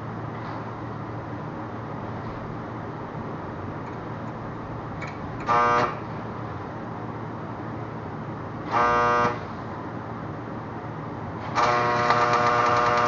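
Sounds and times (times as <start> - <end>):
vehicle horn toots: 5.5 - 6.0, 8.7 - 9.4.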